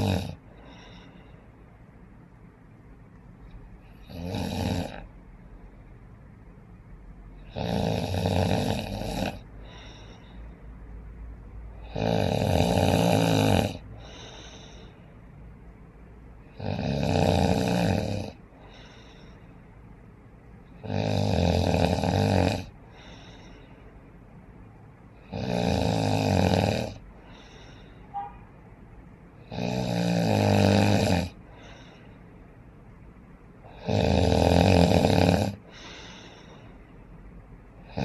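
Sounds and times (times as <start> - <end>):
person snoring: 0.0 - 1.1, 3.9 - 5.1, 7.4 - 10.1, 11.8 - 14.9, 16.5 - 19.3, 20.8 - 23.5, 25.2 - 27.8, 29.4 - 31.9, 33.7 - 36.5, 37.8 - 38.0
soft breathing: 0.0 - 2.1, 9.3 - 11.9, 13.8 - 15.6, 18.3 - 20.1, 22.7 - 25.3, 27.0 - 28.5, 31.3 - 33.0, 35.5 - 37.9.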